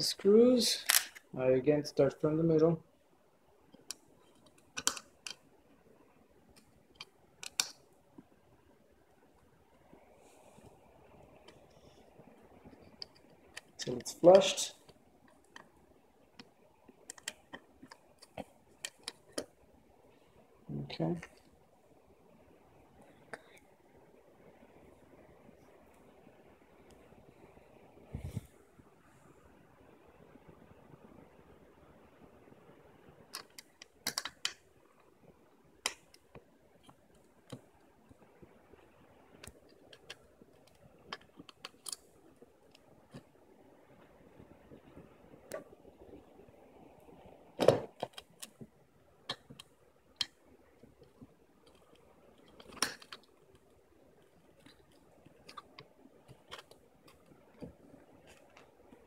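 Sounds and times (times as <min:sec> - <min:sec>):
small hard parts clicking: 0:03.7 - 0:05.5, 0:06.5 - 0:07.8, 0:12.6 - 0:19.5, 0:33.2 - 0:35.1, 0:47.9 - 0:59.0
light clicks of small parts: 0:33.2 - 0:35.1, 0:35.8 - 0:43.3, 0:48.0 - 0:59.0.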